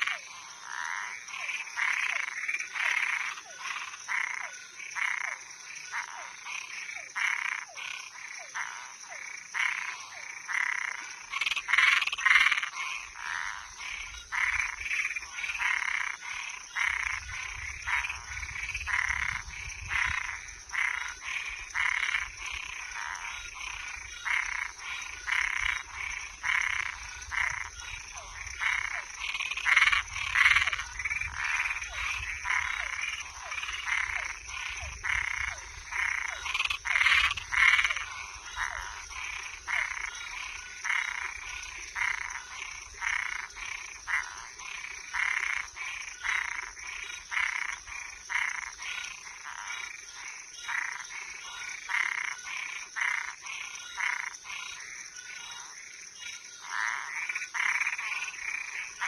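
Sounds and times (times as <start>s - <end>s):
frogs calling: 0.0s - 59.0s.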